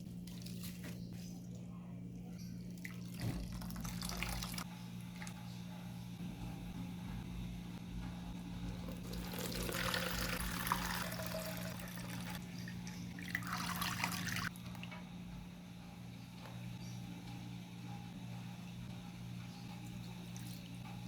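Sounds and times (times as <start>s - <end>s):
low electrical hum: 0.0s - 21.0s
water running: 2.6s - 5.7s, 8.3s - 15.0s, 18.5s - 21.0s.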